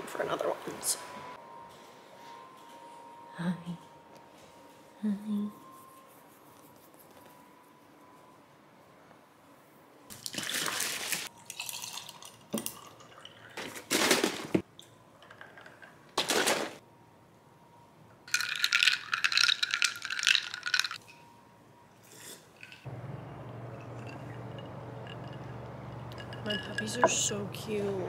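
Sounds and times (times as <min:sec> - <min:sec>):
clinking and rattling: 0:18.3 - 0:21.2, 0:22.6 - 0:27.4.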